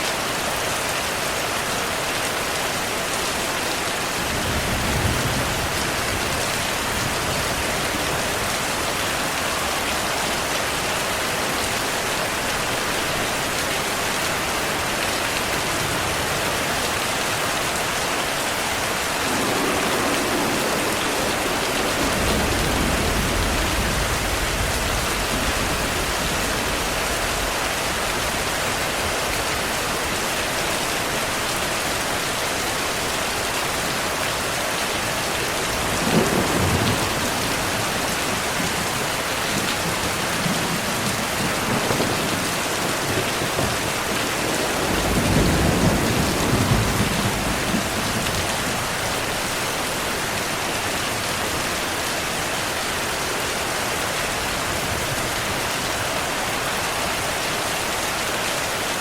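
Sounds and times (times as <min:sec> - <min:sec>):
steady downpour of rain: 0:00.0 - 0:59.0
low rumble of thunder: 0:04.3 - 0:08.8, 0:19.2 - 0:28.4, 0:35.6 - 0:38.9, 0:39.5 - 0:49.4
sharp thunderclap: 0:19.2 - 0:27.6, 0:43.1 - 0:48.9.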